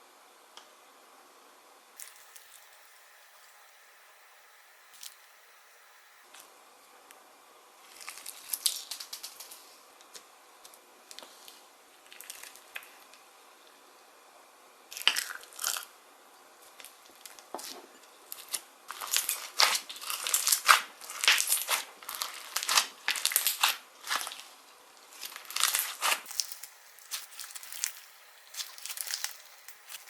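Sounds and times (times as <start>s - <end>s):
slime crackling when squeezed: 25.2s - 30.0s.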